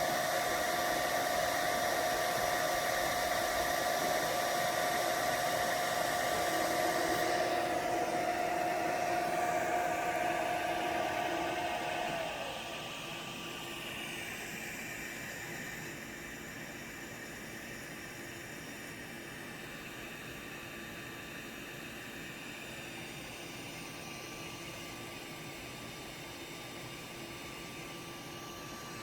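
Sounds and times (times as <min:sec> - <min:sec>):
motors whining: 0:00.0 - 0:13.2
cooling fans hissing: 0:00.0 - 0:15.9.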